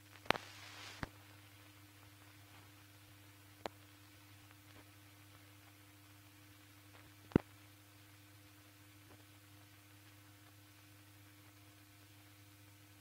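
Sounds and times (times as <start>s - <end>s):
faint electrical hum and hiss: 0.0s - 13.0s.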